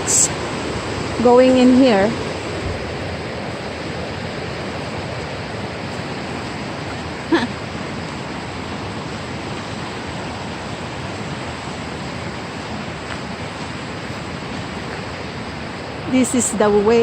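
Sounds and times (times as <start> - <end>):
river rushing: 0.0 - 17.0.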